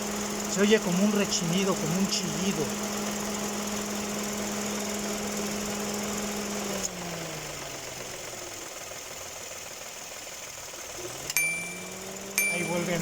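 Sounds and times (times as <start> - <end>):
car engine idling: 0.0 - 13.0
air-conditioning compressor whine: 11.3 - 13.0.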